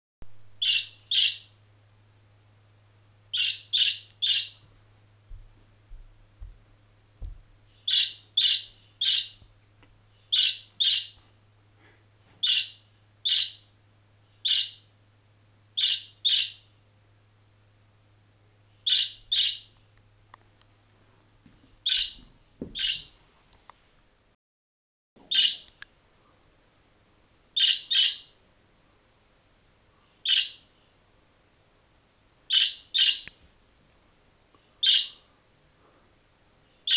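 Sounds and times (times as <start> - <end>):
faint low hum: 0.2 - 24.4
budgerigar chirping: 0.6 - 1.6, 3.3 - 4.6, 7.8 - 9.4, 10.2 - 11.2, 12.4 - 13.7, 14.4 - 14.9, 15.8 - 16.7, 18.8 - 19.7, 21.8 - 23.1, 25.3 - 25.7, 27.6 - 28.4, 30.2 - 30.7, 32.5 - 33.3, 34.8 - 35.2.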